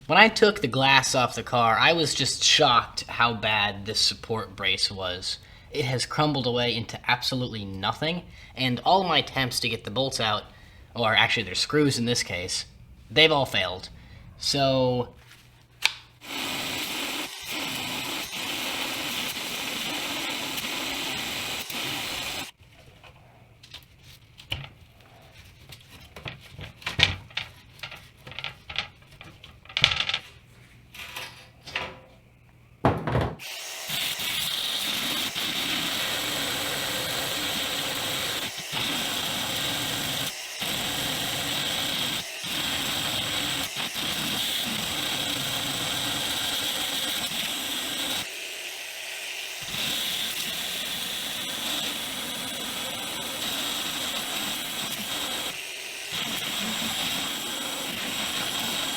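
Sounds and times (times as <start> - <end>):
handheld power tool running: 16.2 - 22.6, 33.4 - 58.9
knocks and scrapes: 24.0 - 32.0.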